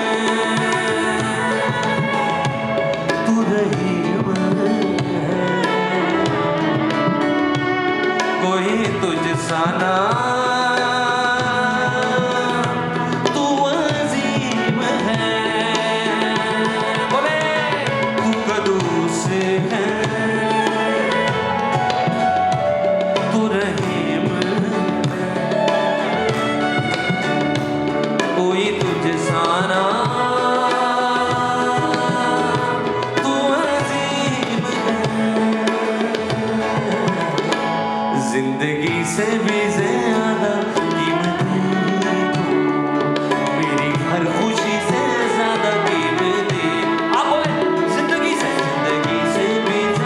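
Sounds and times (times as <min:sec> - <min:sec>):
voices singing: 0:00.0 - 0:22.5, 0:23.1 - 0:50.0
accompanying instruments: 0:00.0 - 0:50.0
tabla: 0:00.0 - 0:50.0.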